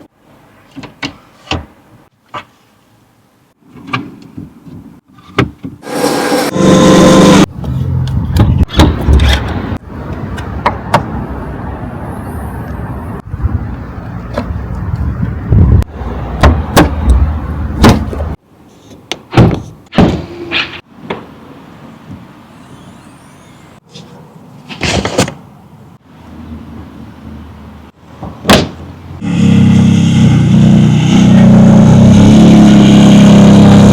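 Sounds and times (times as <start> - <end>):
car engine starting and running: 5.8 - 13.5, 28.9 - 33.9
car engine rumble: 5.8 - 18.6
sharp thump: 28.2 - 28.8.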